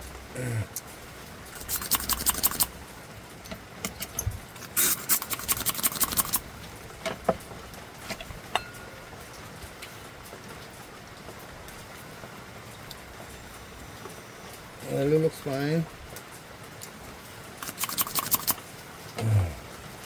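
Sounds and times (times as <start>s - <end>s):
plastic parts clicking and scraping: 1.6s - 2.7s, 3.5s - 6.4s, 17.6s - 18.6s.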